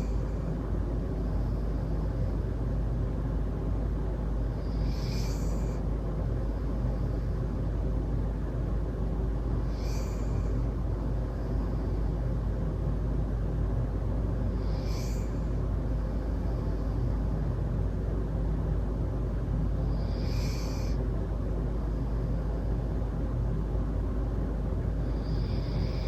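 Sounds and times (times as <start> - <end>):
steady low rumble: 0.0 - 26.0
dog snoring: 4.4 - 5.9, 9.6 - 12.0, 14.5 - 17.1, 19.8 - 21.0, 25.1 - 26.0.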